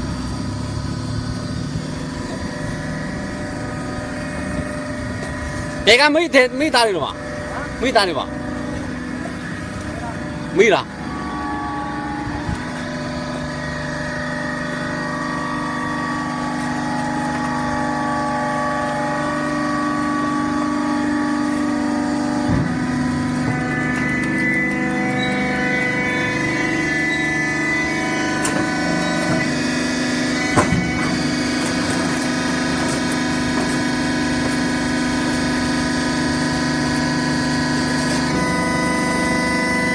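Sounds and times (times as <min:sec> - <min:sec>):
baling press motor humming: 0:00.0 - 0:39.9
hydraulic whine: 0:00.0 - 0:39.9.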